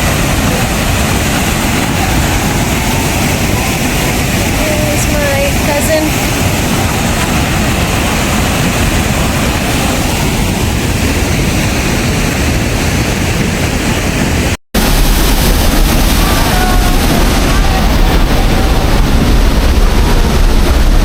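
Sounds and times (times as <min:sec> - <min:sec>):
waterfall roar: 0:00.0 - 0:21.0
low rumble: 0:13.5 - 0:21.0.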